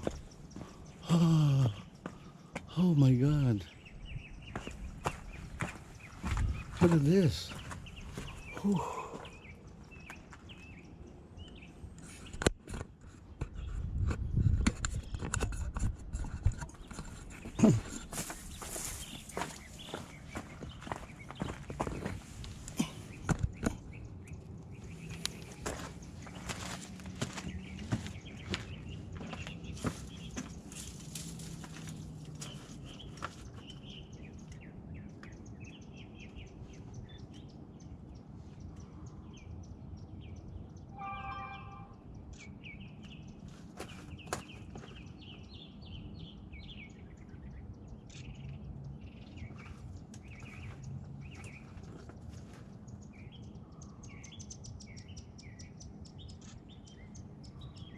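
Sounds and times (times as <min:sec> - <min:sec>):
footsteps crunching on dirt: 0:00.0 - 0:02.7, 0:04.4 - 0:10.6, 0:16.8 - 0:24.0, 0:24.8 - 0:34.0, 0:43.5 - 0:45.2, 0:49.6 - 0:52.8
small birds chirping: 0:00.0 - 0:57.9
harsh bird call: 0:40.9 - 0:42.1.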